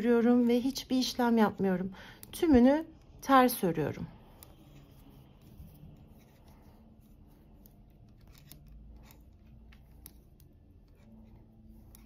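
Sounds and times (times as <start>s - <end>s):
knitting needles clicking: 7.4s - 12.0s.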